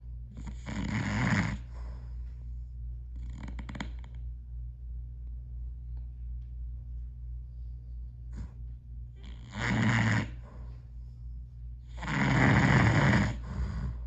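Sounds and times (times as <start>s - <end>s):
steady low hum: 0.0s - 14.0s
man snoring loudly: 0.4s - 1.6s, 9.3s - 10.4s, 12.0s - 14.0s.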